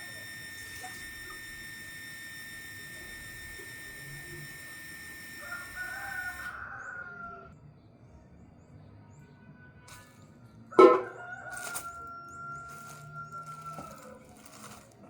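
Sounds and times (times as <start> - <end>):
steady high whine: 0.0 - 6.6.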